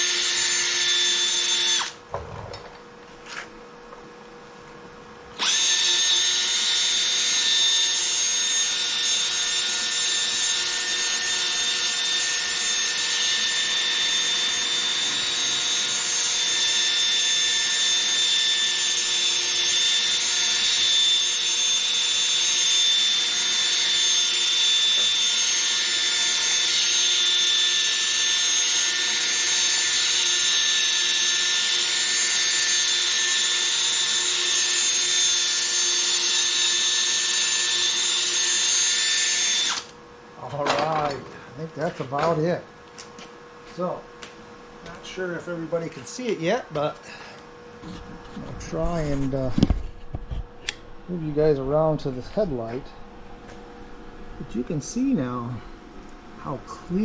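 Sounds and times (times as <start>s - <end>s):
cordless drill whining: 0.0s - 2.0s, 5.4s - 40.0s.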